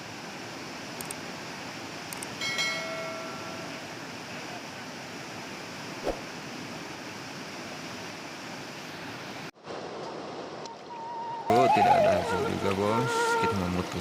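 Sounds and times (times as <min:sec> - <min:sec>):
metallic ringing tones: 0:02.4 - 0:03.9.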